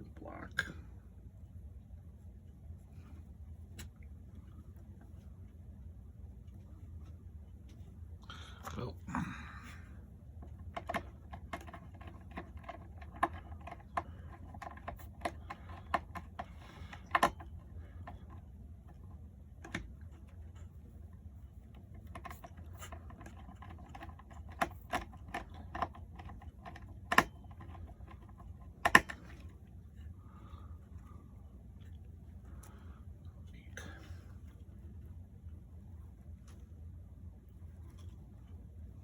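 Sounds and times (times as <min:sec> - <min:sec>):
faint low hum: 0:00.0 - 0:39.0.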